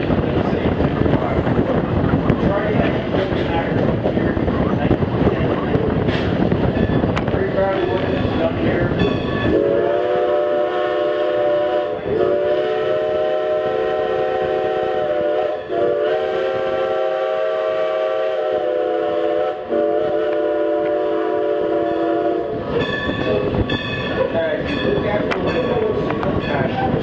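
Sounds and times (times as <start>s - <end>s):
locomotive steam whistle blasts: 9.4s - 22.7s.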